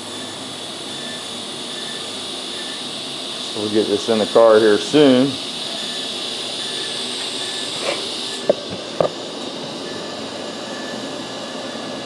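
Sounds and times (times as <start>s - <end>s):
welding hiss: 0.0s - 12.0s.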